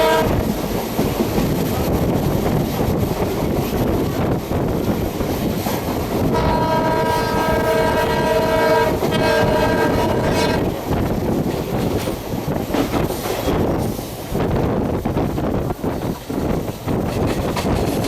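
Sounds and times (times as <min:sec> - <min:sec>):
locomotive multi-tone horn: 0:00.0 - 0:00.4, 0:06.3 - 0:10.7
train clattering on rails: 0:00.0 - 0:18.0.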